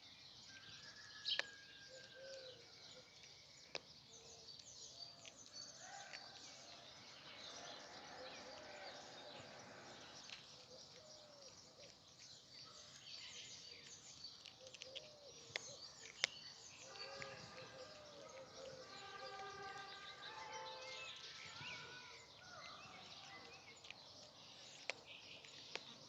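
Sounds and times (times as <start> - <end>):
small birds chirping: 1.1 - 26.0
whistled bird notes: 16.8 - 22.8.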